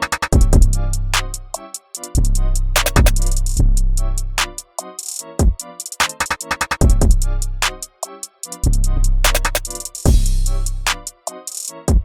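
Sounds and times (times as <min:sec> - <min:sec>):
hi-hat ticks: 0:00.0 - 0:11.9
electronic beat music: 0:00.0 - 0:12.0
deep bass hits: 0:00.4 - 0:01.3, 0:06.8 - 0:07.7, 0:10.1 - 0:11.0.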